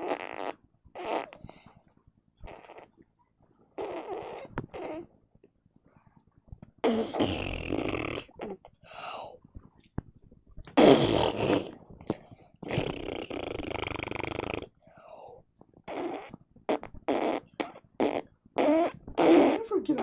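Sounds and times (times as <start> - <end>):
rasping fart sounds: 0.0 - 1.7, 2.4 - 3.1, 3.7 - 5.2, 6.8 - 8.8, 10.5 - 20.0.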